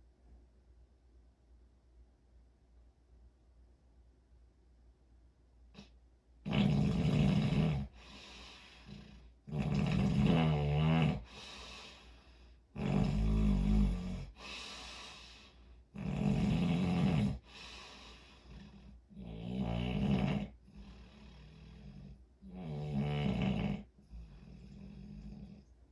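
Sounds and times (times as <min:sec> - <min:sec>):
loud snores: 0:05.8 - 0:11.9, 0:12.7 - 0:25.7
soft breath: 0:07.8 - 0:09.4, 0:11.2 - 0:12.7, 0:14.2 - 0:15.9, 0:17.4 - 0:19.1, 0:20.5 - 0:22.4, 0:23.8 - 0:25.9.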